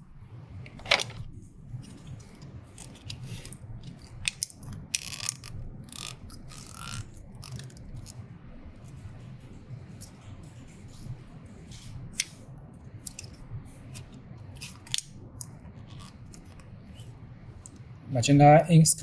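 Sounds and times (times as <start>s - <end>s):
steady low hum: 0.0s - 19.0s
small plastic clicks and rattles: 2.0s - 8.2s.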